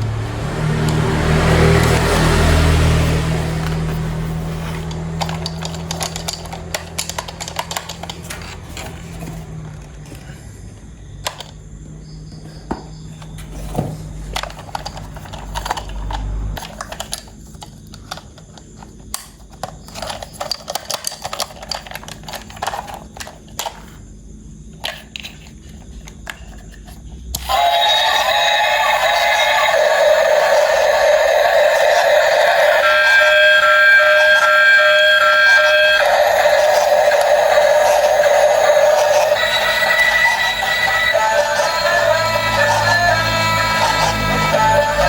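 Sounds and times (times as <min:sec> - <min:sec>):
low hum: 0:00.0 - 0:07.3
plastic toy parts clicking: 0:04.6 - 0:09.2, 0:11.2 - 0:11.6, 0:14.3 - 0:24.0, 0:24.8 - 0:27.5.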